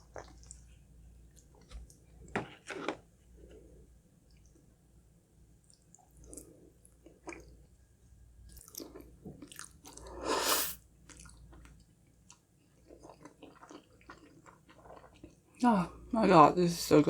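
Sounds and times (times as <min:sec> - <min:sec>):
chewing and biting food: 0:08.5 - 0:10.0, 0:11.0 - 0:15.4.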